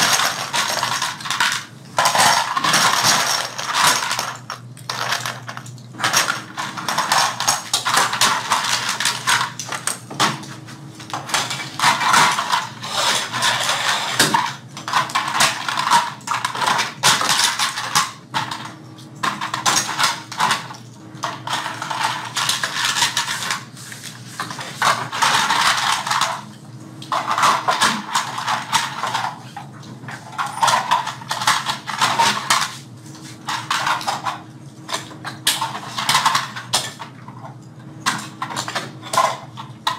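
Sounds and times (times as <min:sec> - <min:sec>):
toy parts clicking and clattering: 0:00.0 - 0:09.9, 0:11.2 - 0:18.6, 0:24.5 - 0:26.4, 0:35.5 - 0:37.0.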